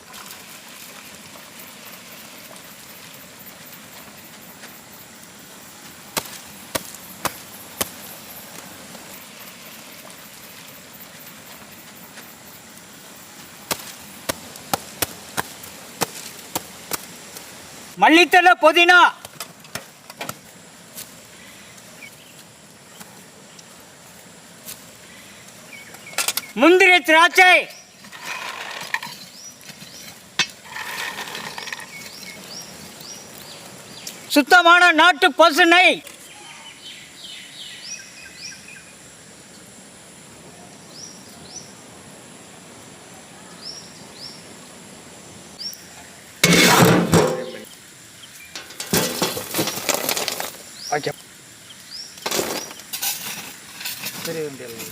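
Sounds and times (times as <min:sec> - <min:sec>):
steady hiss: 0:00.0 - 0:54.9
birds chirping: 0:21.3 - 0:23.8, 0:25.0 - 0:28.4, 0:29.0 - 0:39.0, 0:47.2 - 0:48.9, 0:50.6 - 0:52.9
faint chirps: 0:36.1 - 0:39.0.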